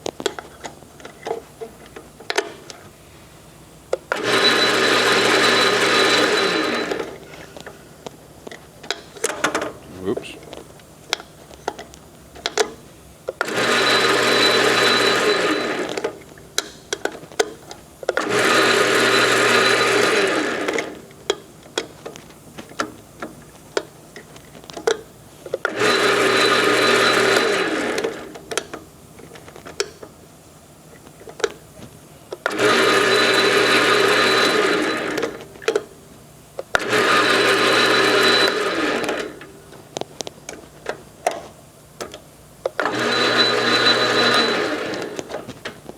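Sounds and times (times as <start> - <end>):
lathe motor running: 4.1 - 7.2, 13.4 - 16.2, 18.2 - 21.0, 25.7 - 28.4, 32.4 - 35.4, 36.8 - 39.5, 42.8 - 45.5.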